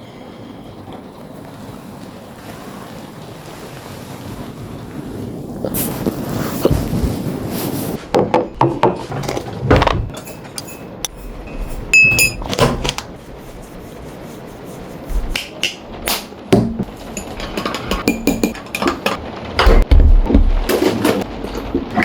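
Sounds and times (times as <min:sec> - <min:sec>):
dishes and glassware clinking: 0:08.2 - 0:13.0, 0:16.6 - 0:19.8
high ringing tone: 0:10.2 - 0:12.5
steady rushing noise: 0:10.2 - 0:20.1.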